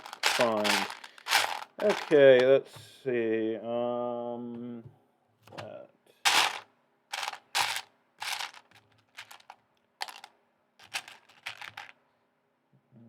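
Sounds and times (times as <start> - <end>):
plastic toy bricks clattering: 0.0 - 2.5, 6.3 - 12.0.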